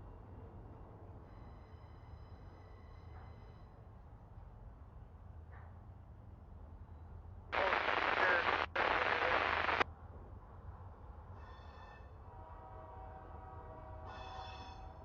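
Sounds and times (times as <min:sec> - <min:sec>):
faint steady tones: 0:07.6 - 0:09.8
radio static hiss: 0:07.6 - 0:09.8.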